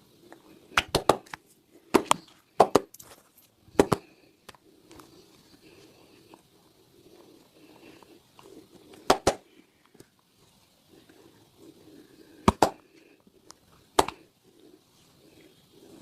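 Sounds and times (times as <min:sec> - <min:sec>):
hands smacking during massage: 0:00.7 - 0:02.9, 0:09.0 - 0:09.4, 0:12.4 - 0:12.8, 0:14.0 - 0:14.2.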